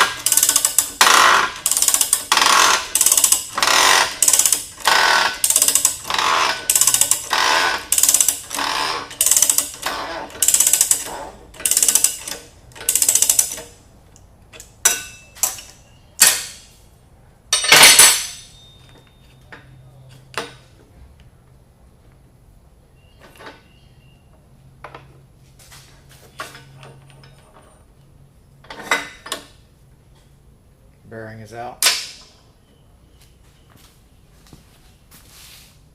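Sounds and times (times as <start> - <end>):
ratchet wrench strokes: 0.0 - 13.7
metal clank: 14.6 - 16.7, 17.5 - 19.0.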